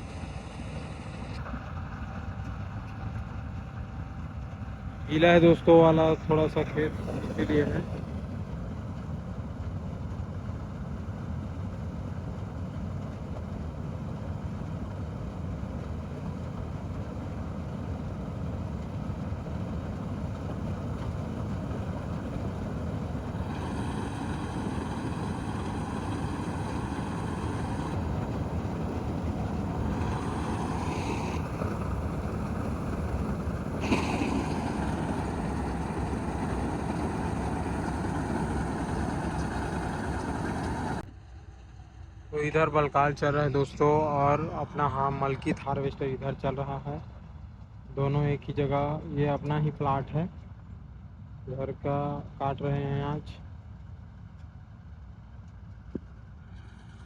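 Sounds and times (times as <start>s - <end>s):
combine harvester engine drone: 0.0s - 57.0s
high whine: 5.1s - 8.3s, 16.1s - 47.0s.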